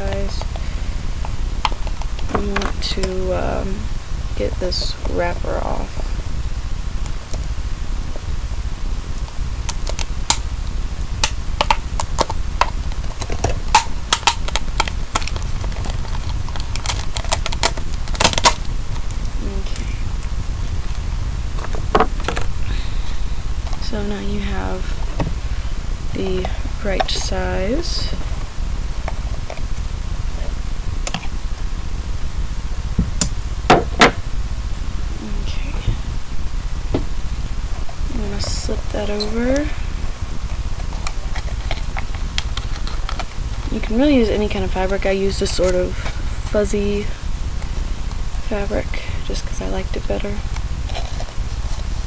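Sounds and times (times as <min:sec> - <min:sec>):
steady low hum: 0:00.0 - 0:52.0
wrapper crackling: 0:11.2 - 0:19.3.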